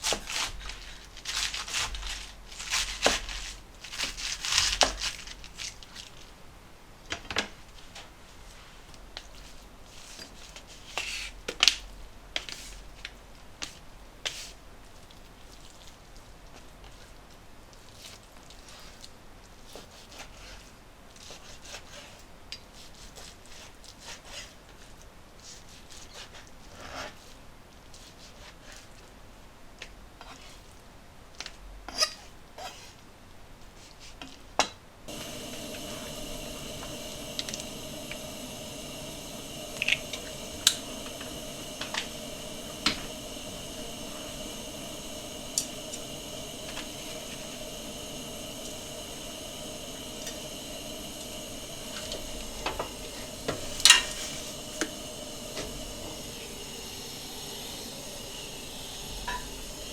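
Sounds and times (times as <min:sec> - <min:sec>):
steady hum: 0:35.1 - 0:59.9.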